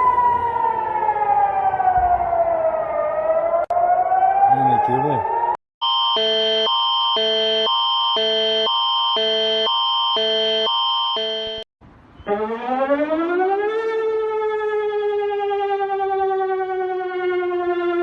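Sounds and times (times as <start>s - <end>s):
emergency alert alarm tone: 0.1s - 18.0s
siren winding up: 3.4s - 11.7s.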